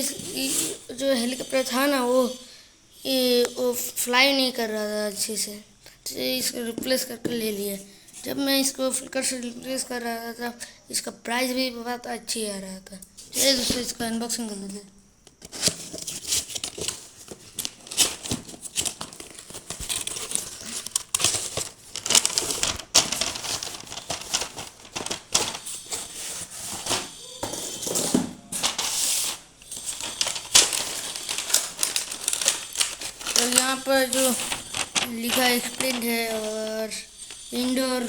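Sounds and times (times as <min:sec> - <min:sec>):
packaging crinkling and tearing: 0:15.4 - 0:26.6, 0:28.6 - 0:37.5.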